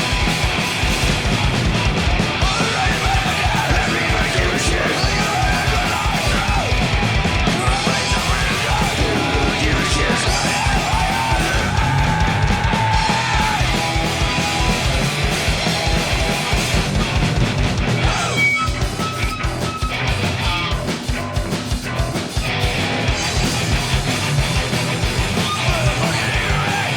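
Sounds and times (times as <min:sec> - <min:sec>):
distorted guitar: 0:00.0 - 0:26.9
pounding drums: 0:00.0 - 0:26.9
punk rock band playing: 0:00.0 - 0:26.9
shouted vocals: 0:02.2 - 0:16.2, 0:25.1 - 0:26.9.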